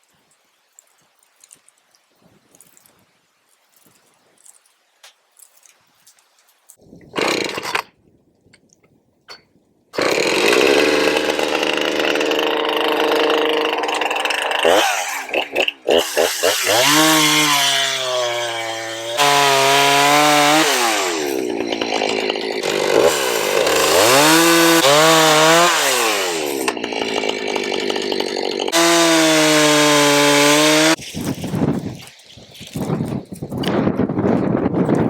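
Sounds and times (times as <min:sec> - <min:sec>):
chainsaw cutting logs: 0:07.1 - 0:08.0, 0:10.0 - 0:32.7.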